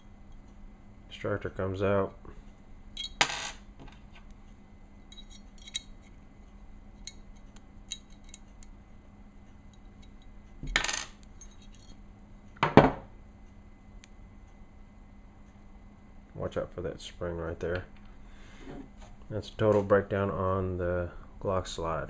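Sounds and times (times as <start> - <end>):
metal parts clicking and clinking: 3.0 - 3.3, 5.1 - 6.2, 7.9 - 8.5, 10.0 - 12.0
metal parts rattle: 5.1 - 5.9.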